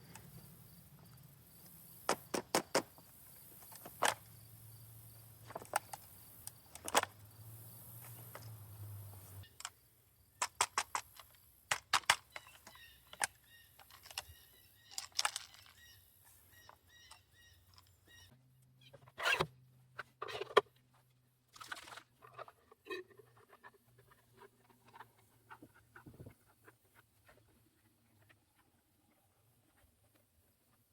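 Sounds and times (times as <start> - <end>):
knocks and clicks of rifle handling: 6.7 - 7.1, 10.4 - 15.8.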